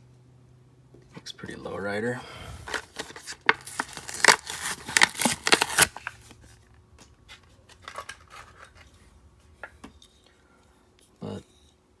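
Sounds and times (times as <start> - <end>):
plastic and cardboard crackling: 2.5 - 8.9
toy car clicks and rustles: 2.7 - 6.2.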